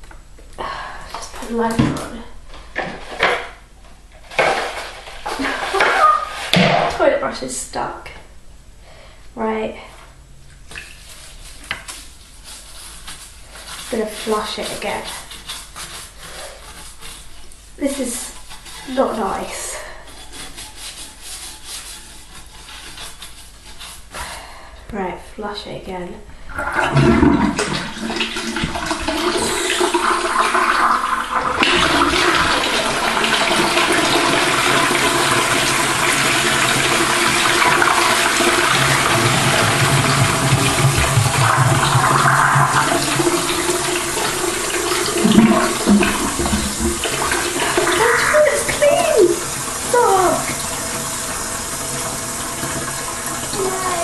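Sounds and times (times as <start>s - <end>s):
toilet flushing: 4.2s - 7.1s, 26.5s - 54.0s
cistern refilling hiss: 27.9s - 54.0s.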